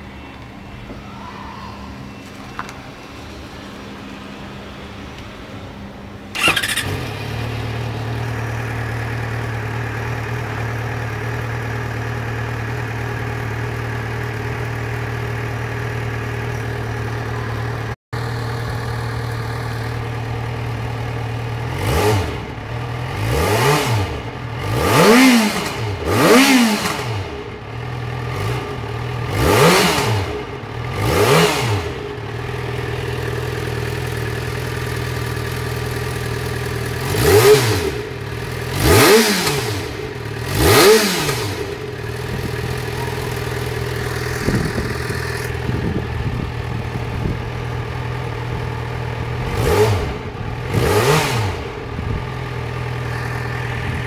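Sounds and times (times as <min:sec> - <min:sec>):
motorcycle engine idling: 0:05.7 - 0:29.4, 0:30.1 - 0:50.8, 0:51.5 - 0:54.0
engine revving: 0:06.3 - 0:10.4, 0:21.6 - 0:47.4, 0:49.2 - 0:54.0.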